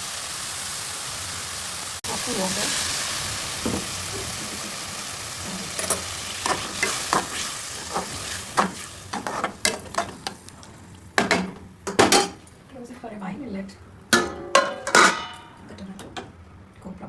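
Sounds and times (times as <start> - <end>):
vegetables sizzling in a frying pan: 0.0 - 12.0
spatula scraping a pan: 5.7 - 10.2.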